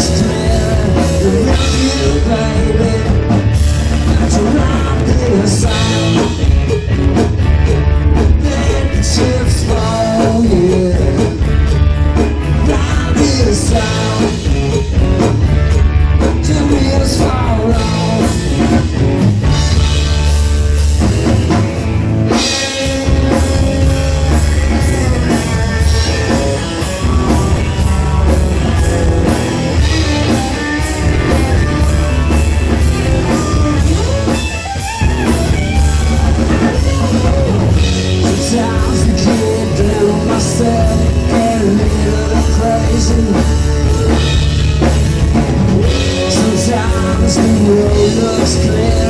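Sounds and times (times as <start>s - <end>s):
bass guitar: 0.0s - 49.0s
drum kit cymbal beat: 0.0s - 49.0s
electric guitar: 0.0s - 49.0s.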